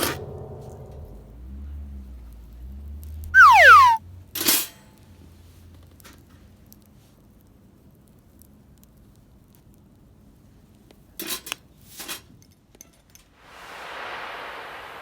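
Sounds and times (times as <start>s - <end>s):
hiss: 13.4s - 15.0s.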